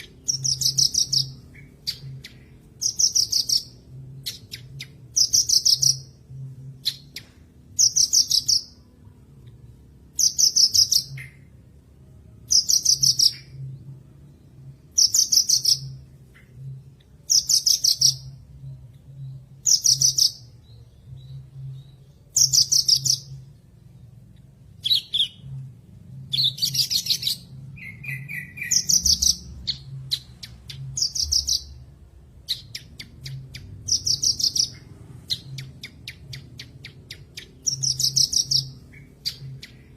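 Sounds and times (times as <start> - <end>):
bush lark singing trills: 0.0 - 8.8, 12.5 - 13.6, 14.9 - 23.5, 26.2 - 31.8, 32.4 - 39.9.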